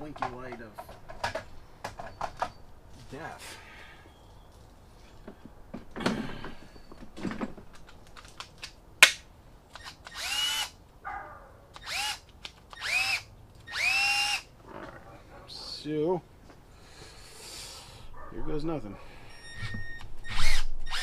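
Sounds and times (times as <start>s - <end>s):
cordless drill motor whining: 9.7s - 10.7s, 11.8s - 14.5s, 19.3s - 21.0s.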